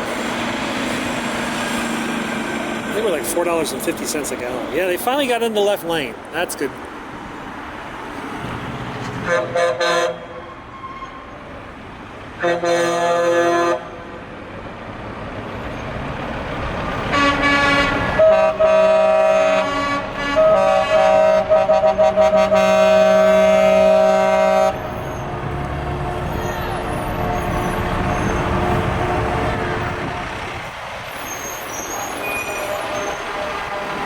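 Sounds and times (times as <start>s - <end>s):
heavy traffic rumble: 0.0s - 34.0s
truck horns honking: 9.2s - 11.3s, 12.4s - 14.1s, 17.0s - 34.0s.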